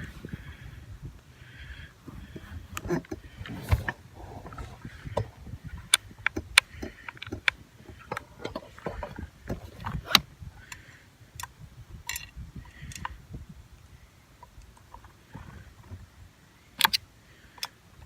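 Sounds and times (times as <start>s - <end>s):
faint low rumble: 0.0s - 18.0s
sharp clicks and knocks: 2.2s - 10.8s.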